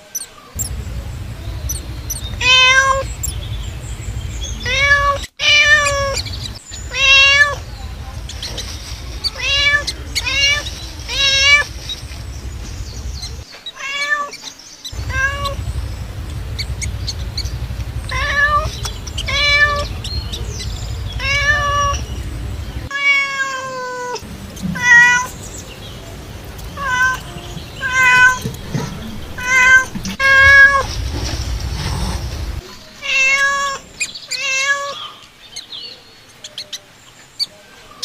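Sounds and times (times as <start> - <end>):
cat meowing: 0.6 - 3.5, 4.2 - 11.9, 12.5 - 14.4, 15.0 - 25.4, 26.7 - 30.9, 32.5 - 35.2
steady low rumble: 0.6 - 13.4, 14.9 - 22.9, 24.2 - 32.6.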